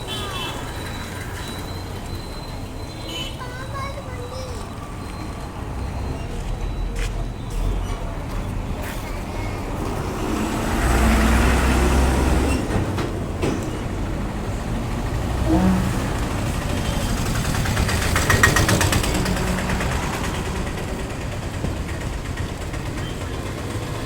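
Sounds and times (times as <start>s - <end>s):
bus engine rumbling: 0.0s - 24.0s
street noise: 0.0s - 24.0s
fast rattling: 16.9s - 24.0s.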